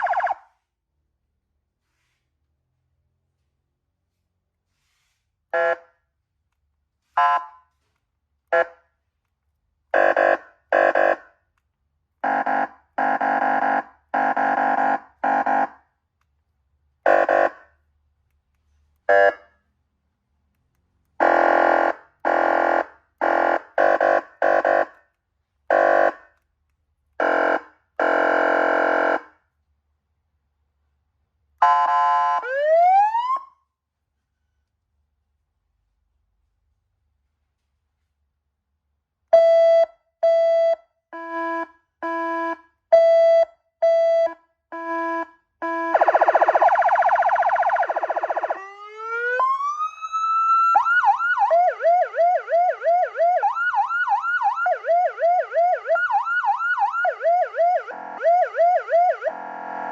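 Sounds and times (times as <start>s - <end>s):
buzzy electronic horn blasts: 12.2s - 15.8s, 21.2s - 24.9s, 27.2s - 29.3s, 57.8s - 58.4s, 59.1s - 59.9s
rising siren sweep: 45.8s - 59.9s.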